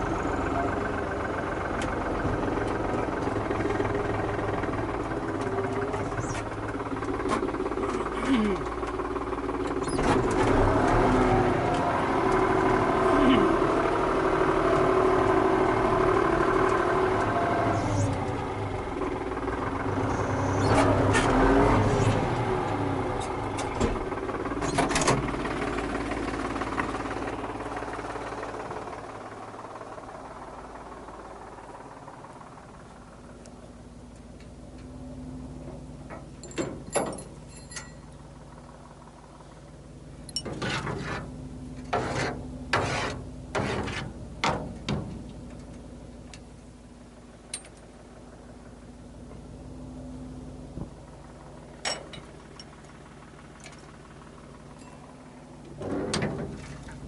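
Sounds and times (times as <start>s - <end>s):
tractor engine running: 0.0s - 57.0s
sharp clicks and knocks: 40.3s - 46.5s.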